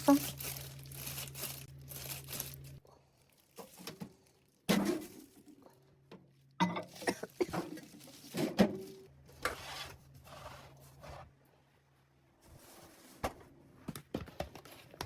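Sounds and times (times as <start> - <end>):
containers and utensils clattering: 3.6 - 5.7, 6.6 - 9.1.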